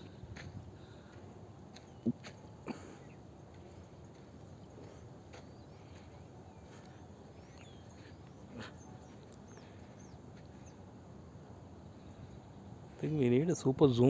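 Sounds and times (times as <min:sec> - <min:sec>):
low steady background noise: 0:00.0 - 0:14.0
small birds chirping and whistling: 0:04.1 - 0:10.8.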